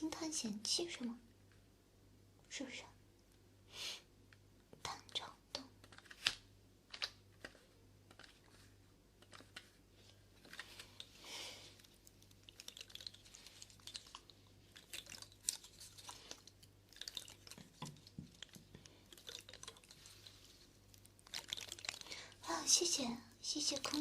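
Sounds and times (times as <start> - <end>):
low steady hum: 0.0 - 24.0
soft rustle: 7.3 - 24.0.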